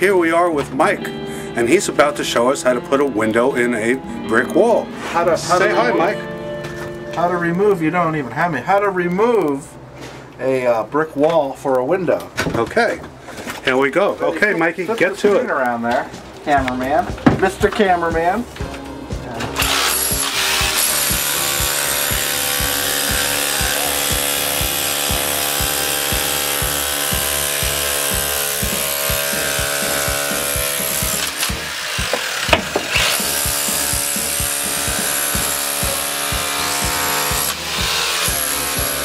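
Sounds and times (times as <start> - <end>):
drill boring into brick: 19.6 - 39.0.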